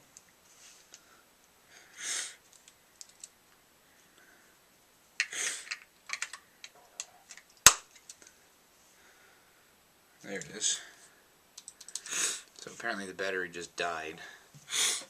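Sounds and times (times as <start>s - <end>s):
small clicks and rustling: 2.4s - 3.6s, 5.2s - 8.4s, 11.6s - 12.8s.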